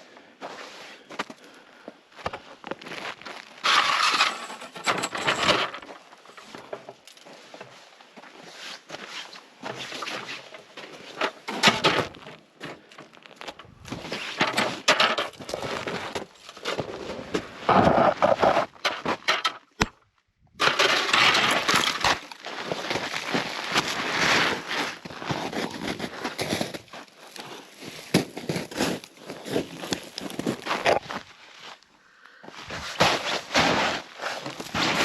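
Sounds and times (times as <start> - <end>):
crunching in packed snow: 2.4 - 4.0, 20.8 - 31.8.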